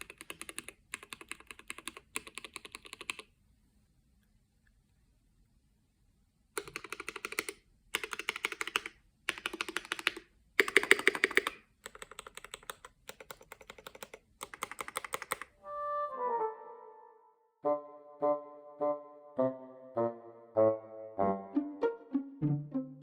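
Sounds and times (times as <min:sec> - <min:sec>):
mechanical keyboard typing: 0:00.0 - 0:03.3, 0:06.6 - 0:15.5
music: 0:15.6 - 0:23.0.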